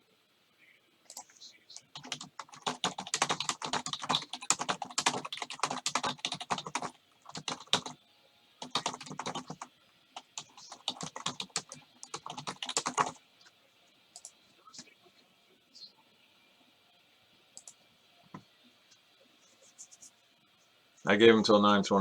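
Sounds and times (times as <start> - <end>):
computer keyboard typing: 1.1 - 8.0, 8.6 - 13.2.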